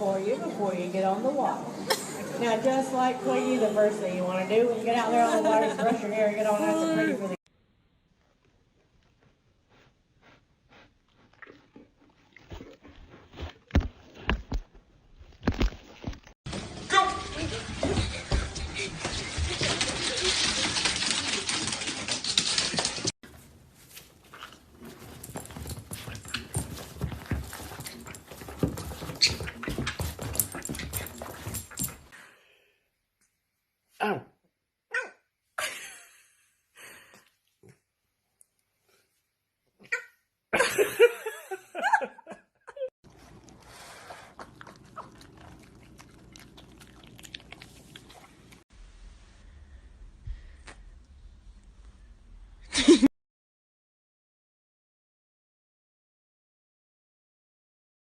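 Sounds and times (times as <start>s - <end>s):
dog thumping and clicking: 25.0s - 32.1s.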